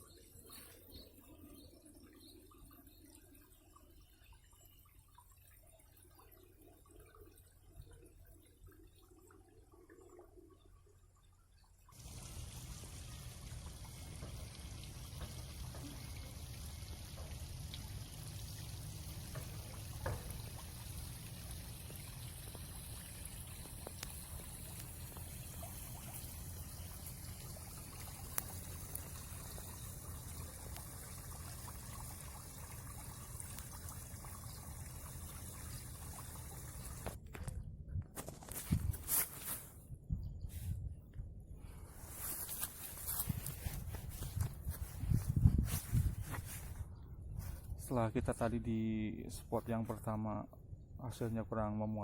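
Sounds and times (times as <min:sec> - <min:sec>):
running water: 0:00.4 - 0:37.2.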